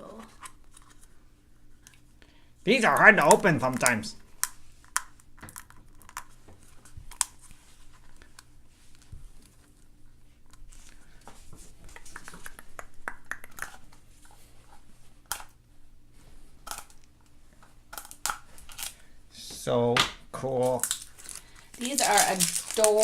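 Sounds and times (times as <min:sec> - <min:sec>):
plastic packaging crinkling: 0:20.6 - 0:23.0.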